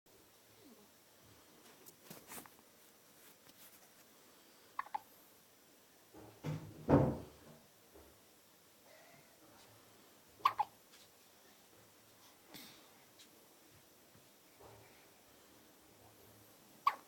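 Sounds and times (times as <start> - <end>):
baby hiccup: 4.8 - 5.0, 10.4 - 10.7.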